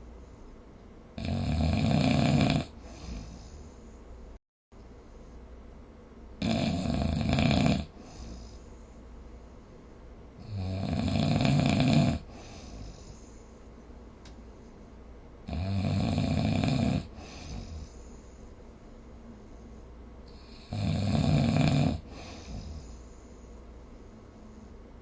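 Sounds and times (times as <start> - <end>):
person snoring: 1.2 - 3.7, 6.4 - 8.6, 10.4 - 13.2, 15.5 - 18.1, 20.3 - 23.0
soft breath: 2.7 - 4.4, 7.9 - 10.1, 12.2 - 15.0, 17.0 - 20.8, 22.0 - 25.0.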